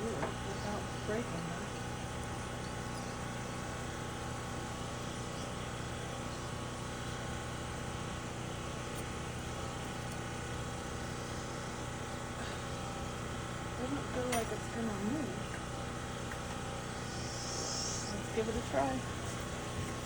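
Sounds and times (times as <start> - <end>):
machine hum: 0.0 - 20.0.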